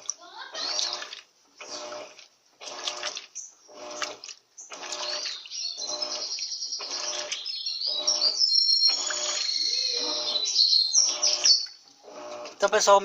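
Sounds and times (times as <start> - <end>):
washing machine churning water: 0.0 - 13.0
bird chirping: 3.3 - 3.8, 4.5 - 12.1.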